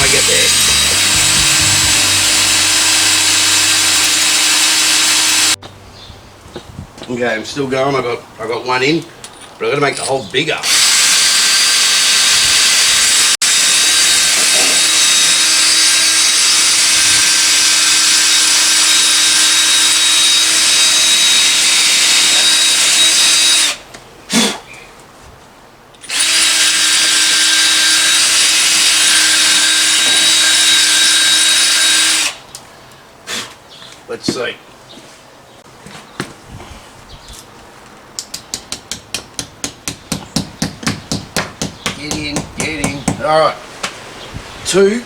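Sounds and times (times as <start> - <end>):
power drill boring into brick: 0.0 - 5.6, 10.6 - 23.8, 26.0 - 32.4.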